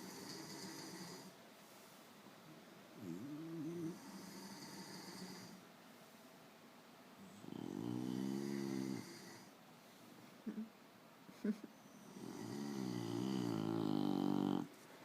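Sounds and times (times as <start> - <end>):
dog snoring: 0.0 - 1.3, 3.0 - 5.6, 7.3 - 9.5, 11.9 - 14.7.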